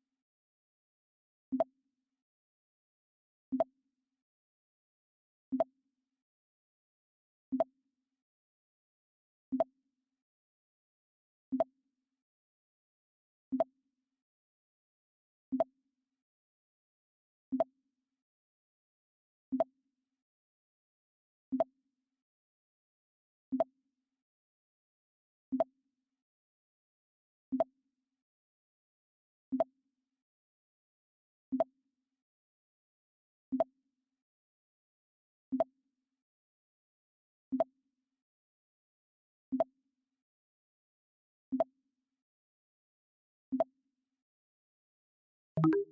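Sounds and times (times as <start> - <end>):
short alert blip: 45.6 - 45.9.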